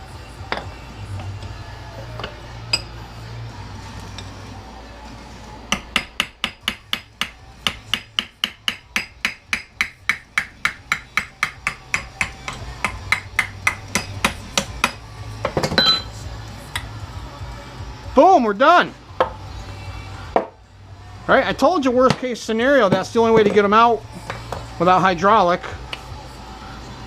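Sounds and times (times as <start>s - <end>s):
rapid hammer blows on metal: 5.7s - 15.6s.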